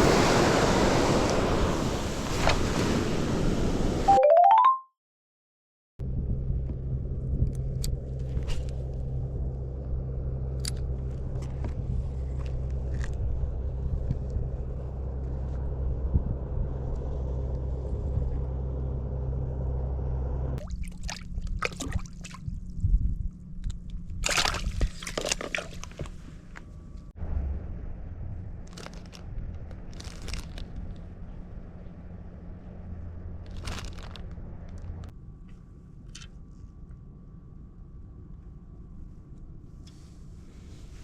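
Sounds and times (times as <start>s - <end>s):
low mechanical hum: 6.0s - 41.0s
rustling handling noises: 28.7s - 31.2s, 33.4s - 36.8s.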